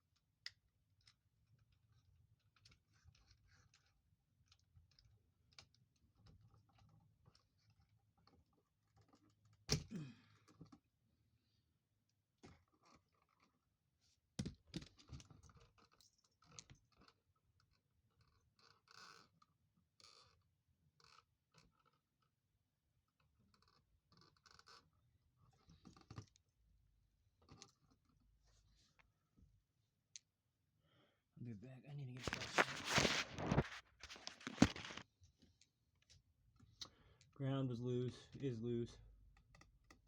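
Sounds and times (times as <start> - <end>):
clicks and scrapes of hands and tool: 32.2 - 37.0.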